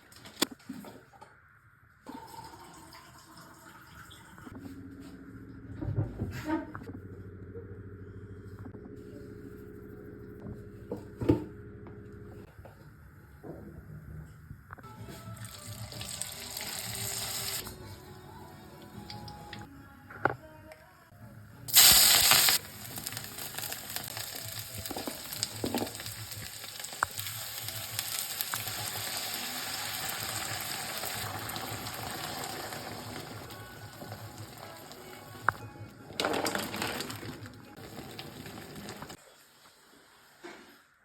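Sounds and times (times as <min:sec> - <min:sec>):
food sizzling in hot oil: 0:15.5 - 0:17.6, 0:21.7 - 0:35.0.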